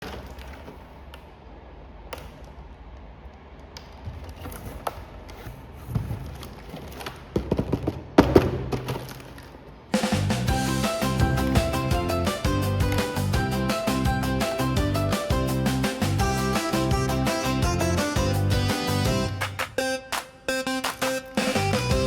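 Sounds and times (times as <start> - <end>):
music: 10.0 - 22.0.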